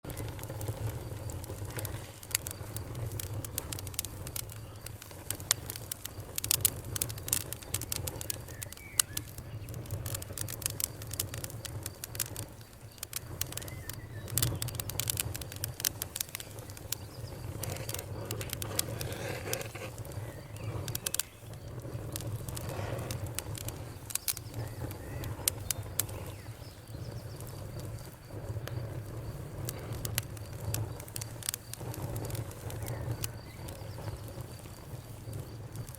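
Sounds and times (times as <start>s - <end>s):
wood fire crackling: 0.0s - 35.9s
birds chirping: 7.4s - 11.6s, 12.5s - 28.5s, 30.8s - 35.4s.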